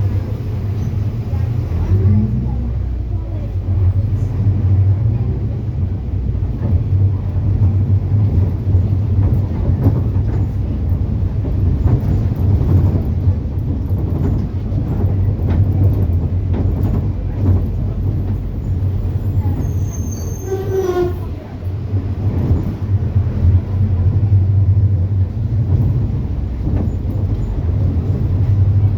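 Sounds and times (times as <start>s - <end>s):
bus engine rumble: 0.0s - 28.9s
rattles and knocks: 6.5s - 19.4s.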